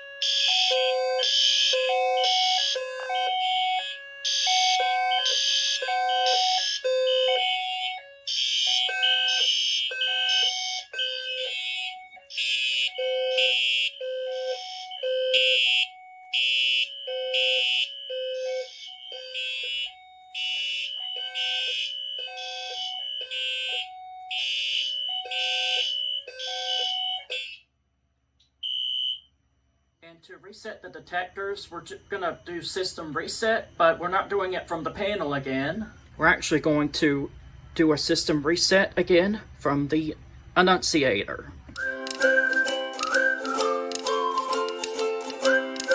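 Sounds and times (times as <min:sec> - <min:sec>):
fire alarm sounder two-pitch tones: 0:00.0 - 0:27.7, 0:28.5 - 0:29.5
fire alarm horns blasting: 0:00.0 - 0:27.8, 0:28.6 - 0:38.8, 0:41.8 - 0:45.9.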